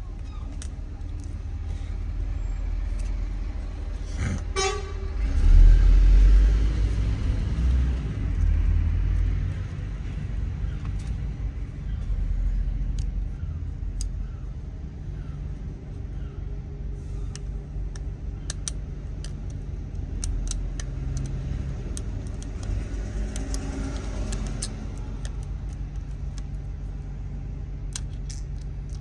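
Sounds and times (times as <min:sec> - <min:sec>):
road traffic engine rumble: 0:00.0 - 0:29.0
vehicle horn toot: 0:04.5 - 0:05.3.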